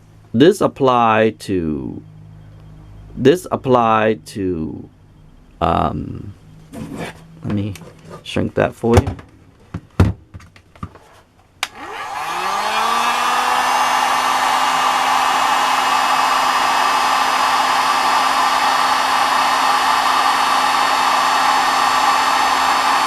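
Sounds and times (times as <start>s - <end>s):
hot-air blower switch click: 11.6s - 11.9s
hot-air blower whine and air rush: 11.6s - 23.0s.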